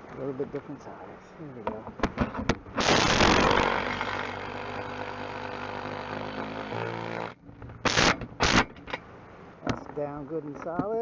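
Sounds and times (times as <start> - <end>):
power driver motor running: 2.7 - 8.2.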